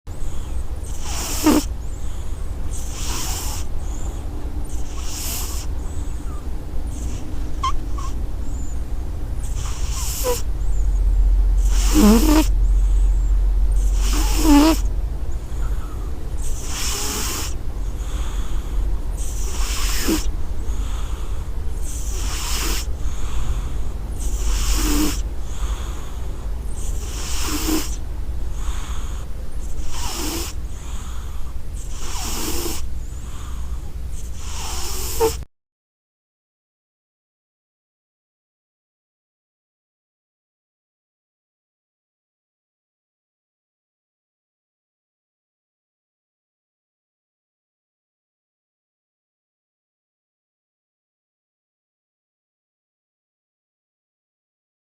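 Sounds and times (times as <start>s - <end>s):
steady low hum: 0.1s - 35.4s
cat snoring: 0.2s - 8.8s, 9.4s - 35.4s.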